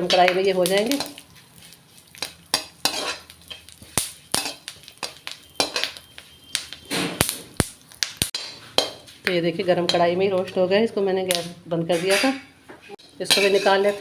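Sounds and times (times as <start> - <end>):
spatula scraping seeds in pan: 0.0 - 6.4, 13.0 - 14.0.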